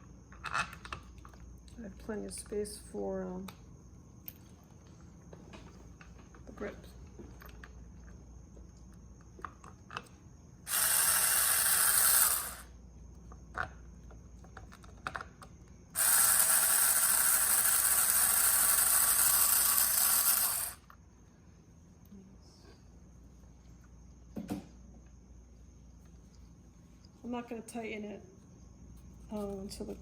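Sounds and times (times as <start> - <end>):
ratchet wrench clicking: 10.7 - 12.7, 16.0 - 20.9.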